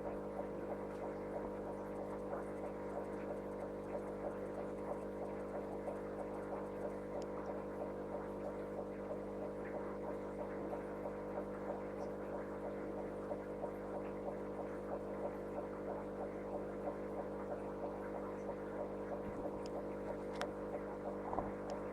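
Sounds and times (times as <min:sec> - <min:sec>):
aquarium pump humming: 0:00.0 - 0:21.9
soft regular ticking: 0:18.8 - 0:20.9.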